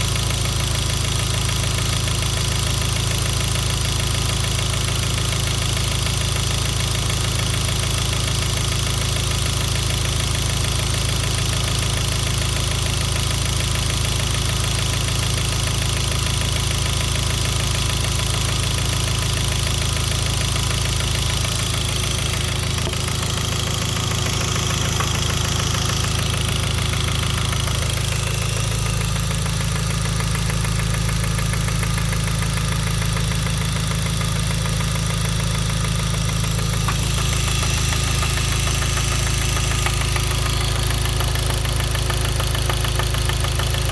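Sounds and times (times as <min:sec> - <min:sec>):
car engine with rod knock: 0:21.3 - 0:29.0, 0:36.6 - 0:43.9.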